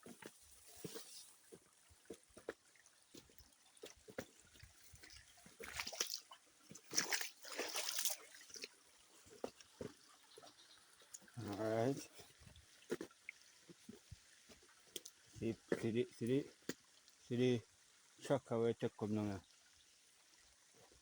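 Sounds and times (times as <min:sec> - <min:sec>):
stream water trickling: 0:00.0 - 0:21.0
short splashes: 0:04.2 - 0:08.8.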